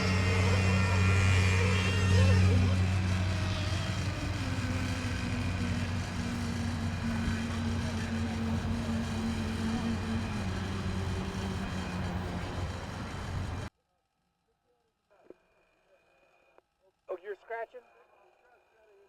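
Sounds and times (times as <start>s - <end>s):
model boat motors running: 0.0s - 13.7s.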